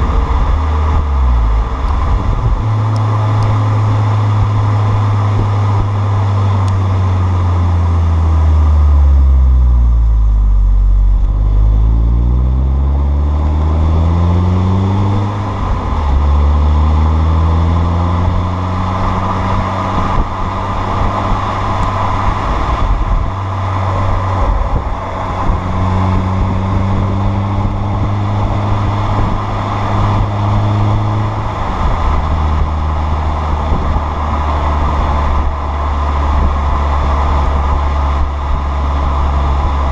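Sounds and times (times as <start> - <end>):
car exhaust revving: 0.0 - 39.9.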